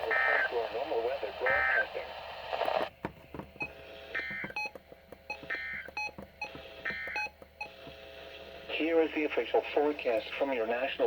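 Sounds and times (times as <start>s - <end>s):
radio hiss: 0.0s - 2.9s, 3.7s - 4.4s, 7.6s - 11.0s.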